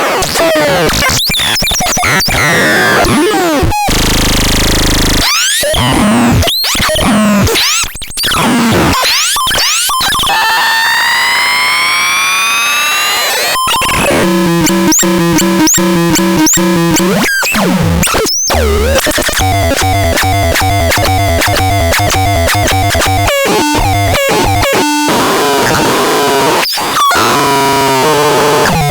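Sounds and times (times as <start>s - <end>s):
synthesizer electronic tones: 13.2s - 28.9s.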